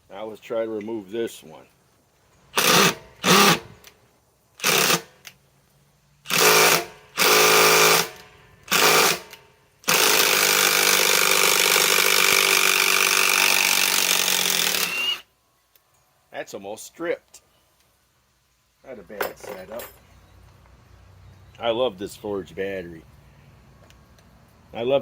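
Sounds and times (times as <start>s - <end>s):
impact wrench hammering: 6.3s - 11.7s.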